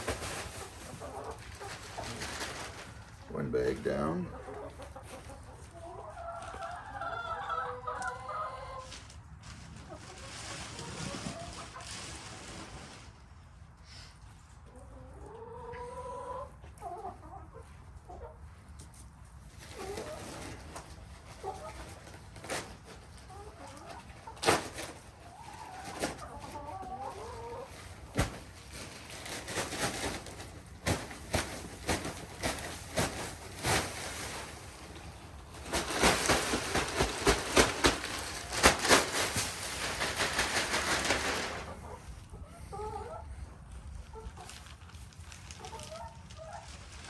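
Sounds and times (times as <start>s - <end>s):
bedding scraping and rustling: 0.0s - 4.4s, 19.5s - 42.3s
hens clucking: 0.0s - 12.1s, 14.5s - 44.6s, 45.6s - 46.8s.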